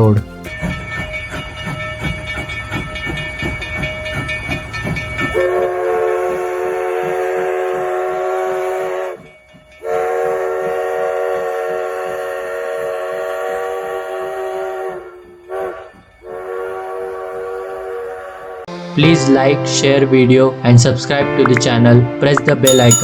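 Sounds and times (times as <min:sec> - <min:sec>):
steam locomotive chuffing: 0:00.0 - 0:18.2
chime whistle chord: 0:22.7 - 0:23.0.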